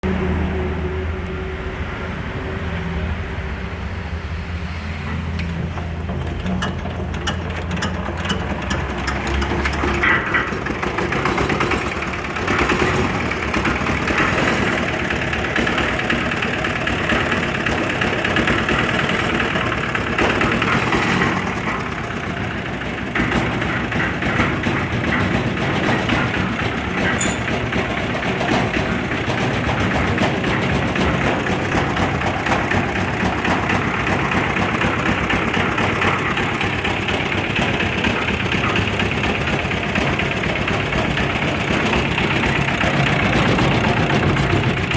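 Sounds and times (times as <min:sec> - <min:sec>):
engine running steadily: 0:00.0 - 0:44.9.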